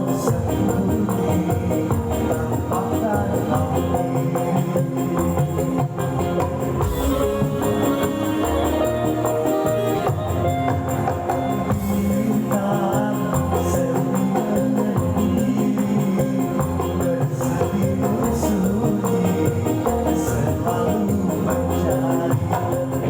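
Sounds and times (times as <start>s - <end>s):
instrumental band music: 6.6s - 12.5s.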